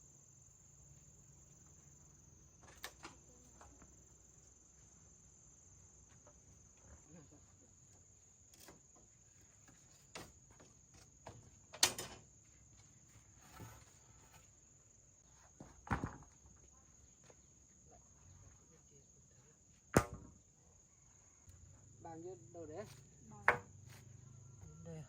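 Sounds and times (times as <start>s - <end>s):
crickets droning: 0.0s - 25.0s
blade chopping wood: 20.0s - 20.3s.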